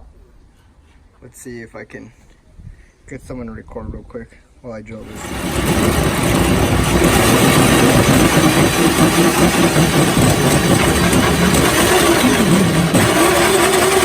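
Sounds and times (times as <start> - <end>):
power drill whining: 5.0 - 14.0.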